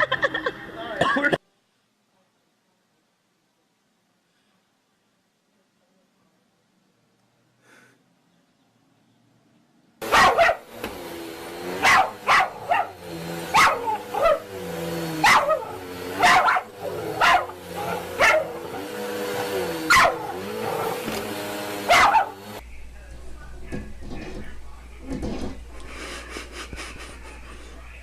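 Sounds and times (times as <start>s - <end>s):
dog barking: 10.0s - 10.8s, 11.8s - 21.1s, 21.8s - 22.6s.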